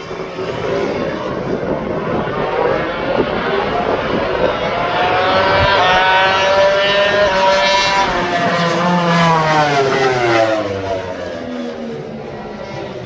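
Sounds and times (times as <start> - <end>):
motorcycle engine passing by: 5.0 - 12.8.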